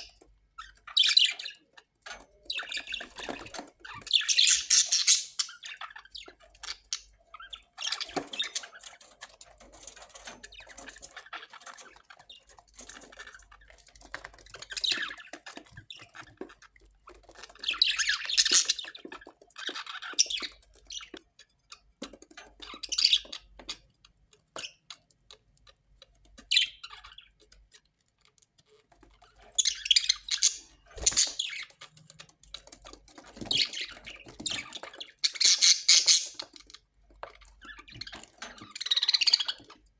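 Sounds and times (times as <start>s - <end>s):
parrots squawking: 4.2s - 5.6s, 29.6s - 31.6s, 35.3s - 36.4s
parrot chattering and clicks: 35.2s - 36.8s.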